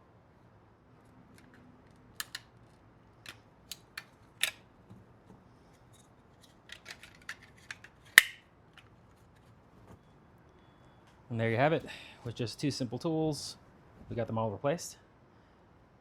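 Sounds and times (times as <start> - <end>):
plastic switch clicks and snaps: 2.2 - 2.4, 8.2 - 8.4.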